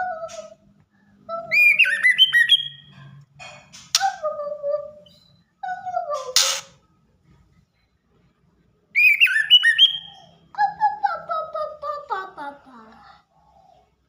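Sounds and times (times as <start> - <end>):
bird singing whistled phrases: 1.5 - 2.9, 9.0 - 10.4.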